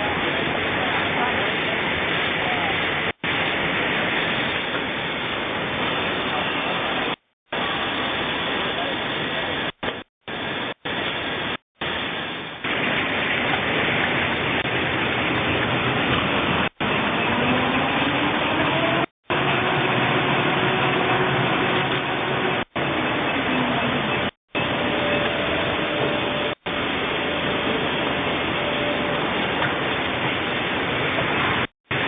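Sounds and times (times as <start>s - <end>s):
paper roll cutting machine running: 14.6s - 32.0s.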